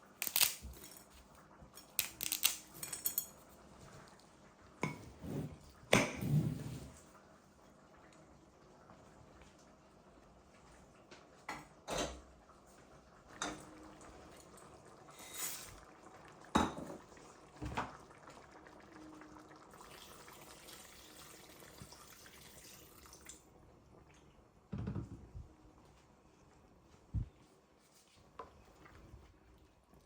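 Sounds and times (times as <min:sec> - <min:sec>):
dishes and utensils clinking: 0:00.2 - 0:01.2, 0:01.8 - 0:03.4, 0:15.1 - 0:15.8.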